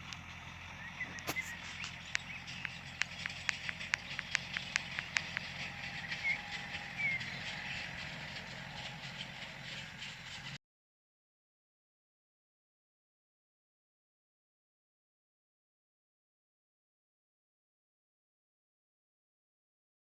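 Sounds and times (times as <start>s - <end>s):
steady low hum: 0.0s - 10.6s
sharp clicks: 0.9s - 7.8s.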